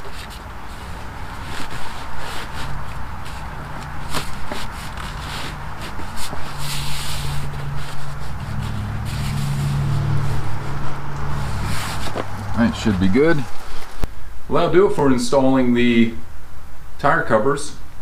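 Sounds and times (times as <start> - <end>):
fabric rustling and scraping: 0.0 - 14.1
footsteps: 0.0 - 14.1
steady low hum: 0.0 - 17.0.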